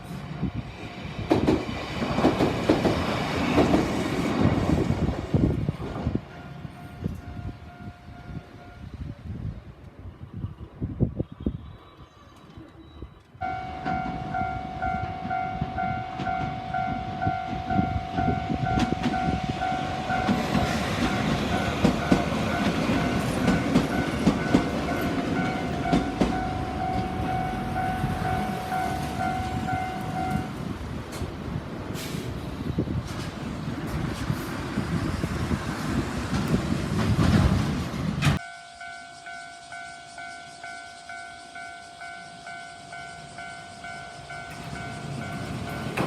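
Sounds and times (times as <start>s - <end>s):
train rumbling with wheel clatter: 0.0s - 38.4s, 41.6s - 46.0s
level-crossing warning bell dinging: 6.3s - 9.0s, 13.4s - 30.7s, 38.4s - 46.0s.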